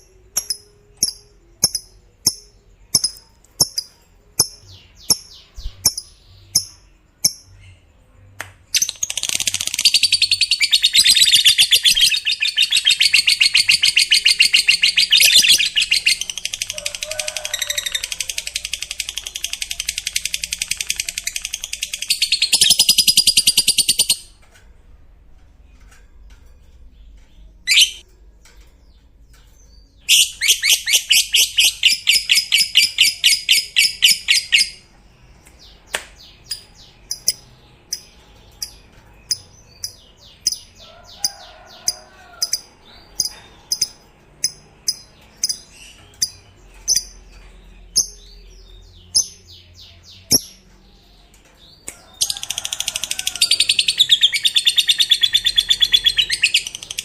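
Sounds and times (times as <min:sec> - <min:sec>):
lovebird chattering: 0:00.4 - 0:07.5.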